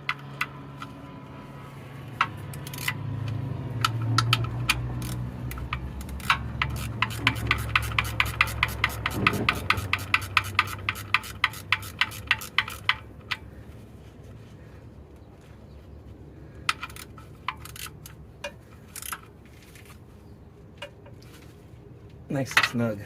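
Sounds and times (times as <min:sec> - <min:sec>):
metal clicks: 0:02.2 - 0:13.5, 0:16.6 - 0:19.4
ratcheting wrench clicking: 0:02.2 - 0:13.5, 0:16.6 - 0:19.3.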